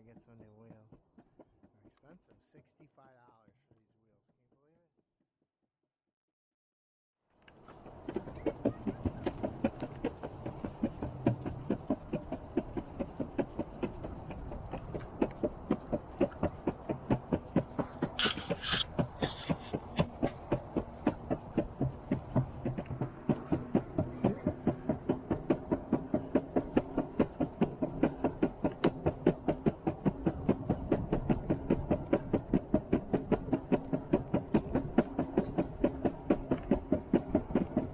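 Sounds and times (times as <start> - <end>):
skateboard wheels rolling on concrete: 7.4 - 37.9
wheels clacking over slab joints: 7.6 - 37.9.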